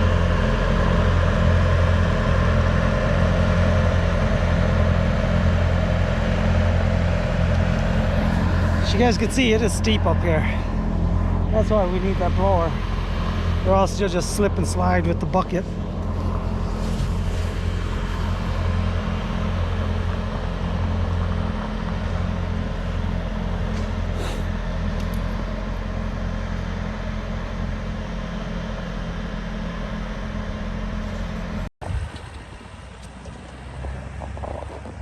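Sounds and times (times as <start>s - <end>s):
skid steer engine humming: 0.0s - 35.0s.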